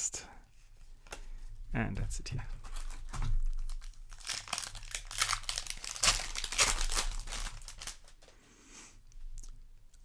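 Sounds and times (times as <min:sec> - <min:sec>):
plastic wrapper crinkling: 0:02.5 - 0:08.4.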